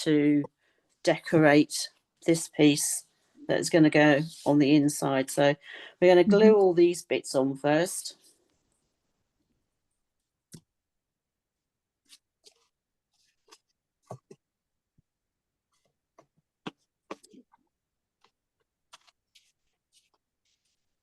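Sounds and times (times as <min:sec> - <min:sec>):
paper being handled: 0:12.0 - 0:14.4, 0:18.2 - 0:21.0.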